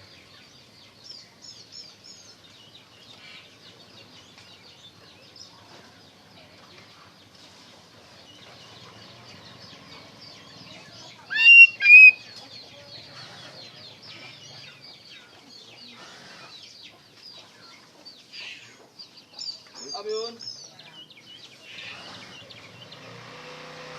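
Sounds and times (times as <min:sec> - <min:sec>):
bird whistled notes: 0:11.3 - 0:12.2.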